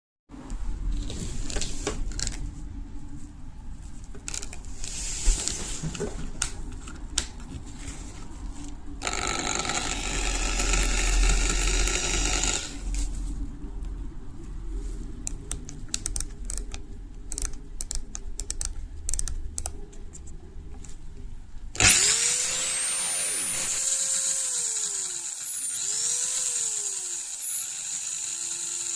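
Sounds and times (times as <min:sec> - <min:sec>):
drill motor rising whine: 0:09.0 - 0:12.8, 0:21.8 - 0:28.9
drill rattling whirr: 0:09.0 - 0:12.8, 0:21.8 - 0:28.9.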